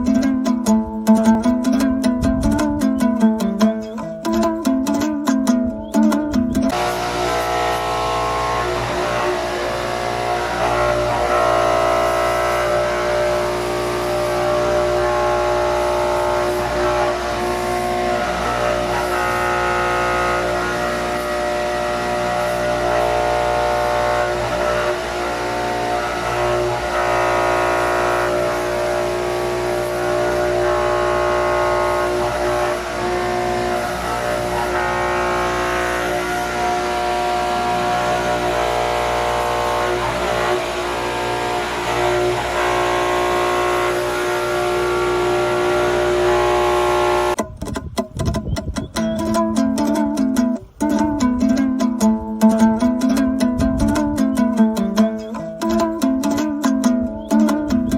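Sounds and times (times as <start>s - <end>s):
metal cutting noise: 0.0s - 48.3s
milling machine whine: 6.3s - 47.4s.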